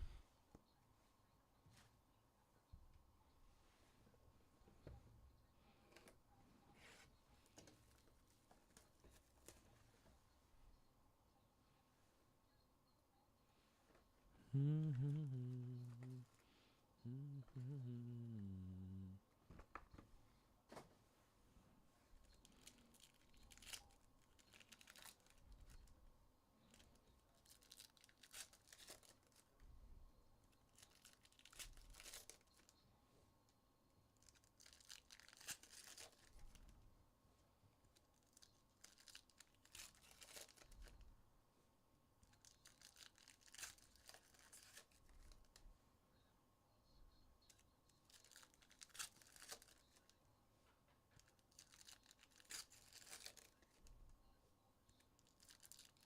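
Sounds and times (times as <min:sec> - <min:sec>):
foil wrappers tearing: 0:22.5 - 0:25.4, 0:27.4 - 0:29.4, 0:30.8 - 0:32.7, 0:34.2 - 0:36.4, 0:42.4 - 0:45.2, 0:48.1 - 0:50.0, 0:51.3 - 0:53.7, 0:55.2 - 0:56.0.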